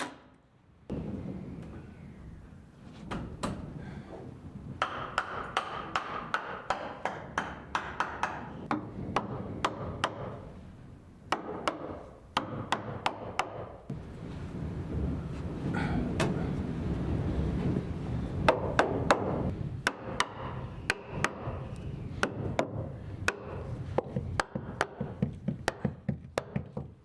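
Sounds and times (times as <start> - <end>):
hammer striking nails into wood: 4.8 - 10.4, 11.3 - 13.8, 19.9 - 21.6, 22.2 - 27.0.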